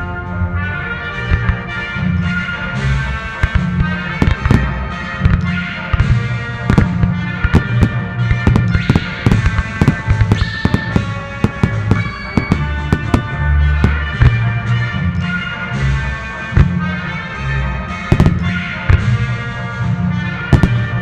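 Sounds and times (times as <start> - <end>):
music: 0.0 - 21.0
firework shells bursting: 3.3 - 15.5, 16.5 - 17.1, 18.0 - 19.4, 20.5 - 21.0.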